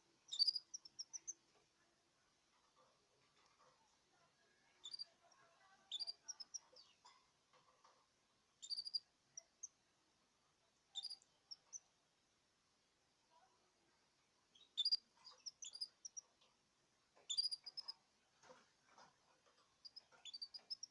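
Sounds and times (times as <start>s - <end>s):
canaries chirping: 0.3s - 1.4s, 4.8s - 7.1s, 8.6s - 9.7s, 11.0s - 11.8s, 14.5s - 16.4s, 17.2s - 18.0s, 18.9s - 20.9s.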